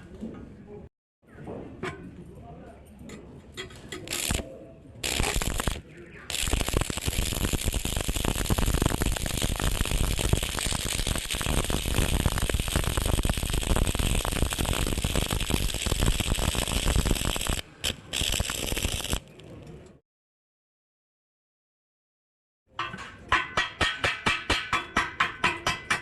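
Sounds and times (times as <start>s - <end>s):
welding arc crackling: 4.1s - 4.4s, 5.0s - 19.4s.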